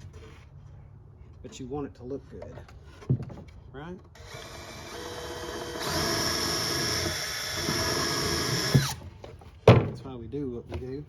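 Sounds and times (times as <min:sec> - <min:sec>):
power drill running: 0:04.2 - 0:09.1.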